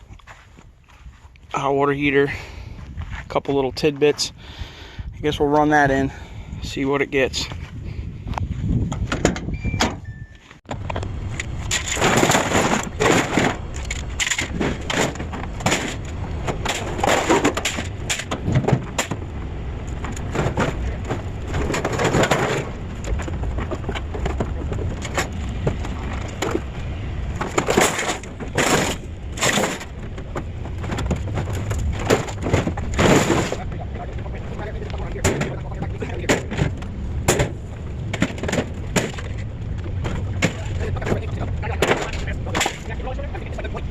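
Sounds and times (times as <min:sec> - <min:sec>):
low engine rumble: 0:00.0 - 0:43.9
metal crashing on metal: 0:11.7 - 0:19.2.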